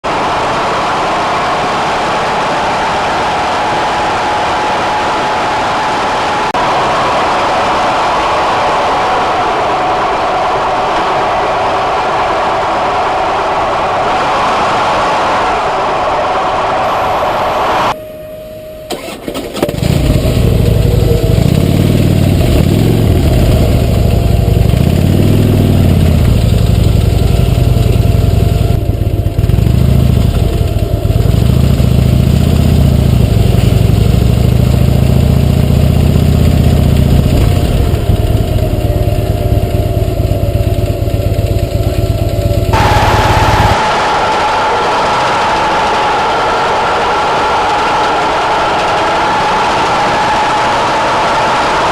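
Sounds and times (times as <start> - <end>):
motorcycle engine revving: 16.8 - 51.9.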